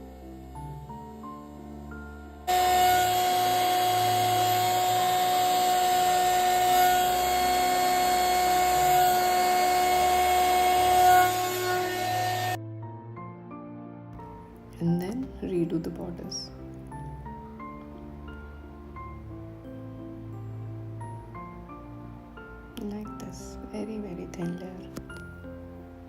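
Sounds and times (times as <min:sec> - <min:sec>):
heat gun fan whining: 0:02.4 - 0:12.6.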